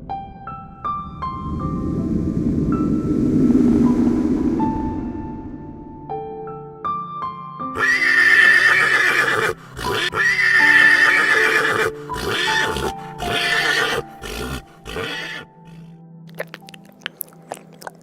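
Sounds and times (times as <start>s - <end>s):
background music: 0.0s - 18.0s
horse neighing: 7.8s - 15.9s.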